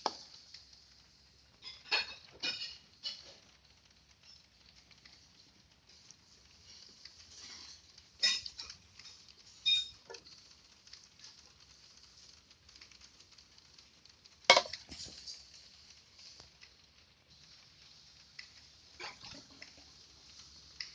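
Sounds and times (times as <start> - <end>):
faint scraping and stirring: 0.0 - 20.9
utensil clinking against a dish: 1.6 - 3.5, 7.3 - 10.4, 14.5 - 15.2.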